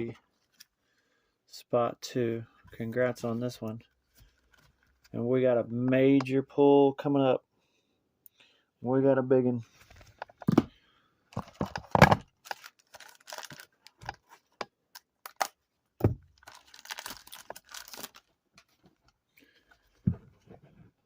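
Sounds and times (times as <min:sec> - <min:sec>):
plastic packaging crinkling: 0:11.4 - 0:14.3, 0:14.9 - 0:15.6, 0:16.3 - 0:18.8.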